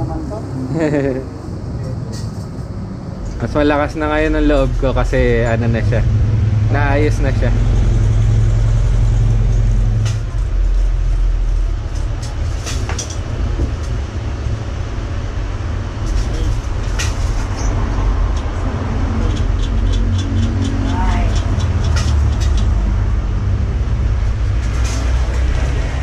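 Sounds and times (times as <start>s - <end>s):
road traffic rumble: 0.0s - 26.0s.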